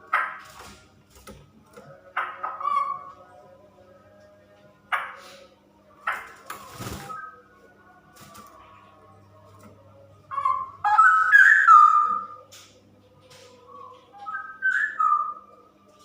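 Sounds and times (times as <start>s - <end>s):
bird whistled song: 10.3s - 12.5s, 13.6s - 15.6s.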